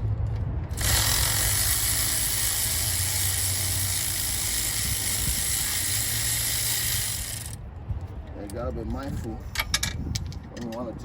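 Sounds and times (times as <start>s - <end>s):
pneumatic tool hissing: 0.8s - 7.6s.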